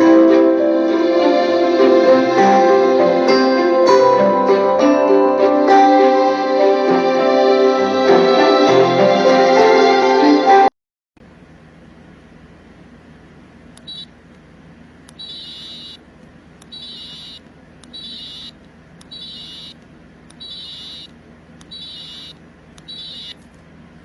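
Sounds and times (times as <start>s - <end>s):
toy high-pitched beeps: 13.8s - 14.1s, 15.2s - 16.0s, 16.7s - 23.4s.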